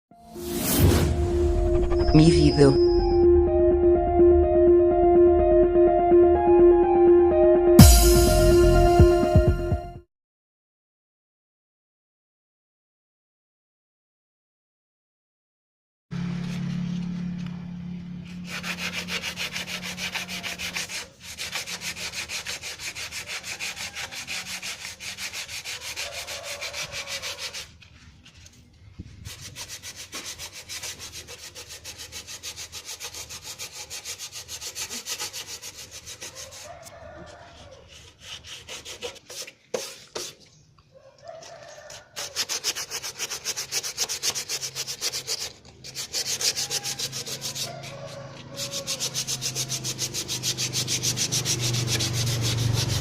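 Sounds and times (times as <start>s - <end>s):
low hum: 0.2s - 9.9s
hand tool scraping surface: 29.2s - 40.5s, 41.3s - 53.0s.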